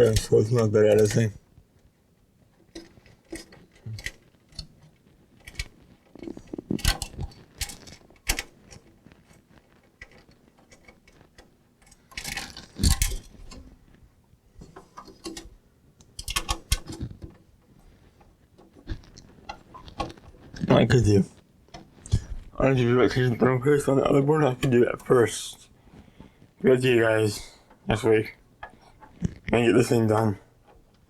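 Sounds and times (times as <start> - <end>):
computer parts and screws clattering: 0.0 - 1.3, 2.5 - 13.8, 14.6 - 20.6.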